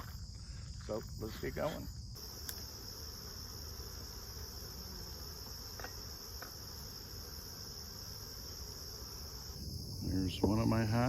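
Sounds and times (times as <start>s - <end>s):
insects singing: 0.0s - 11.0s
faint ticks: 2.4s - 2.7s.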